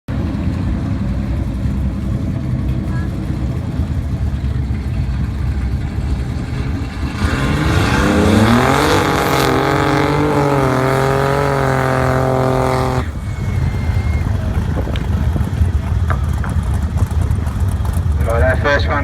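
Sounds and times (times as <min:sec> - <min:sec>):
racing car engine revving: 0:06.1 - 0:18.0.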